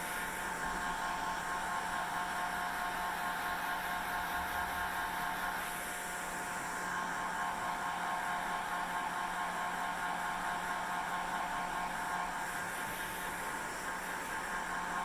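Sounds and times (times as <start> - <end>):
hair dryer running: 0.0 - 15.0.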